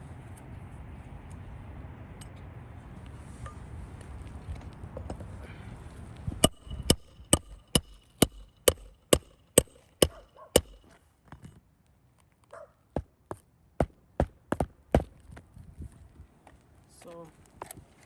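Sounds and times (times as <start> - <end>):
hammer striking nails: 6.4 - 10.9.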